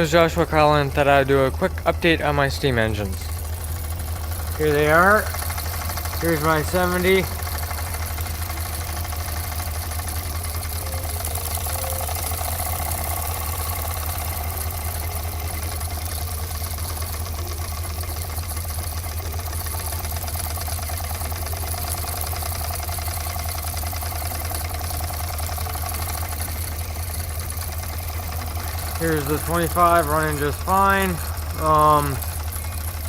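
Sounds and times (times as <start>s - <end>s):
model steam engine running: 0.0s - 33.0s.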